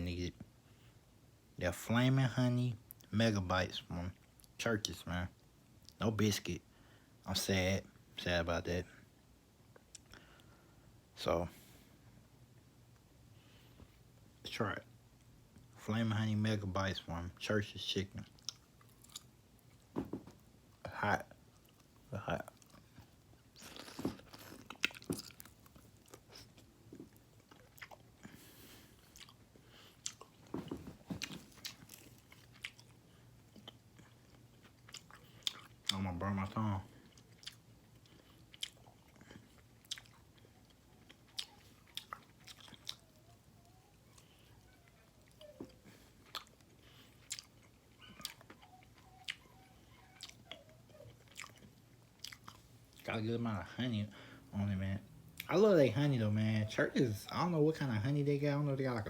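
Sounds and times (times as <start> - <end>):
chewing crunchy fried chicken: 18.2 - 20.1, 20.7 - 53.1.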